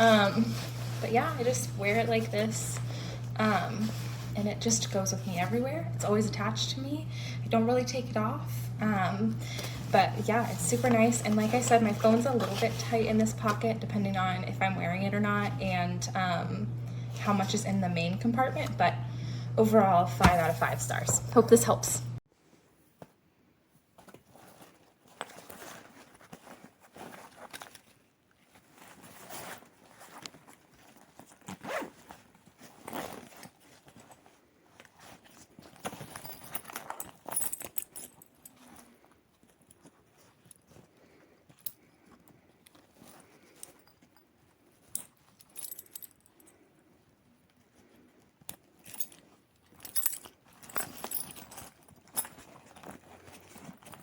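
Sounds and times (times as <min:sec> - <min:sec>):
fabric rustling: 0:00.0 - 0:05.6, 0:09.4 - 0:13.8, 0:20.2 - 0:21.0, 0:22.4 - 0:46.7, 0:47.6 - 0:54.0
zipper pulls: 0:00.0 - 0:06.2, 0:09.0 - 0:14.0, 0:24.0 - 0:44.2, 0:48.0 - 0:54.0.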